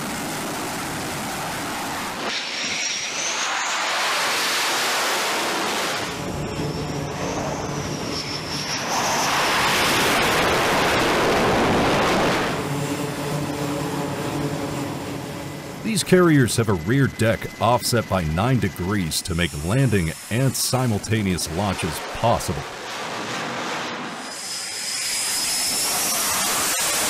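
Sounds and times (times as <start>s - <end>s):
high turbine whine: 0.0s - 27.0s
jet engines roaring: 0.0s - 27.0s.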